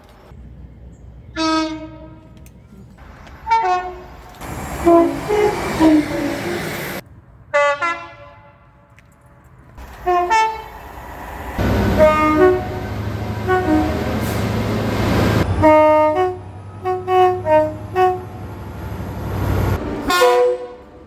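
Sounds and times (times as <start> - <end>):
train rumbling past: 0.0 - 7.6, 9.8 - 21.0
train horn toots: 1.4 - 2.4, 3.4 - 6.7, 7.6 - 8.9, 9.9 - 10.8, 11.6 - 18.6, 20.0 - 21.0.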